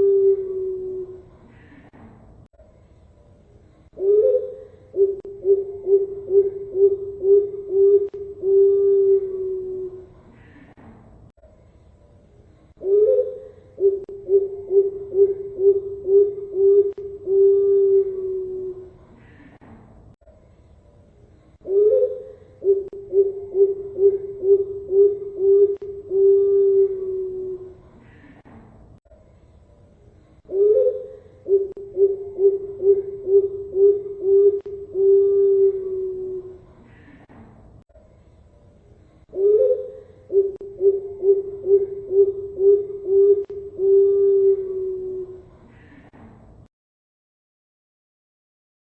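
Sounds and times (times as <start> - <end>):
dove cooing: 0.0 - 2.0, 4.0 - 10.8, 12.8 - 19.6, 21.6 - 28.5, 30.5 - 37.3, 39.3 - 46.2.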